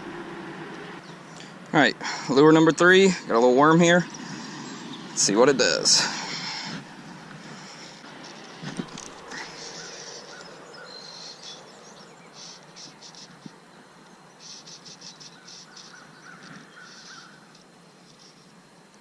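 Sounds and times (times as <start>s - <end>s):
outdoor hiss: 0.0s - 19.0s
small birds chirping: 0.7s - 19.0s
insects chirping rhythmically: 5.8s - 19.0s.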